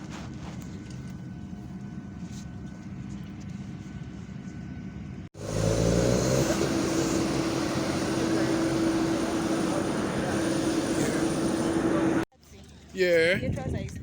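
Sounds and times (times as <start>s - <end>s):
vehicle engine drone: 5.4s - 12.3s.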